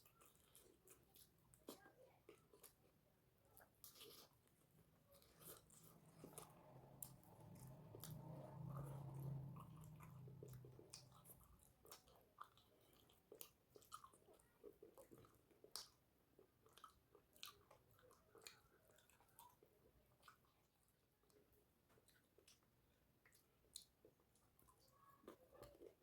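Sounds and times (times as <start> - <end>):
person chewing food: 0.0 - 26.0
low hum: 6.2 - 10.6.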